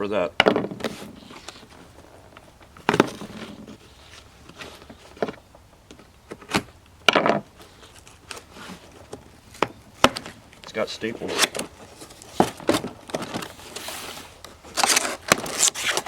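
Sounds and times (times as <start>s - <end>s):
knife scraping cardboard: 13.6s - 16.0s.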